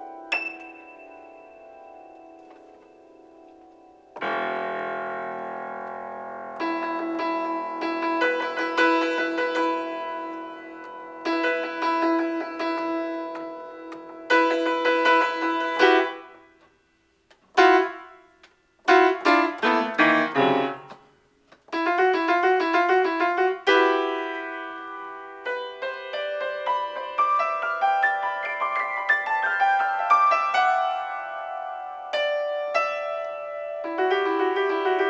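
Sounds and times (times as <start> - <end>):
improvised piano: 0.0 - 35.0.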